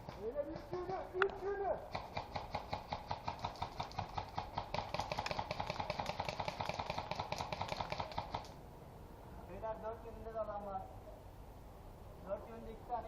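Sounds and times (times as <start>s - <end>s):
airsoft gun rapid clicks: 0.0s - 8.6s.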